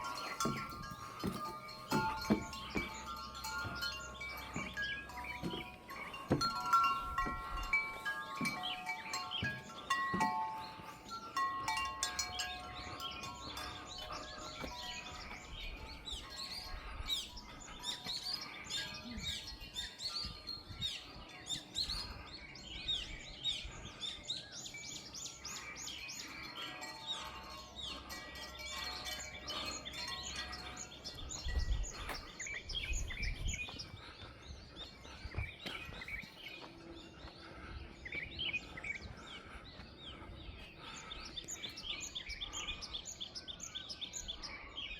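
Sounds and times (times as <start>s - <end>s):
bell ringing: 0.0s - 16.6s
small birds chirping: 0.0s - 44.9s.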